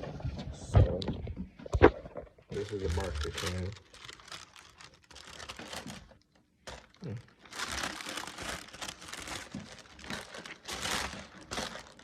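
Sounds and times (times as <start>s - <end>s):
packaging crinkling and rustling: 2.5s - 12.0s.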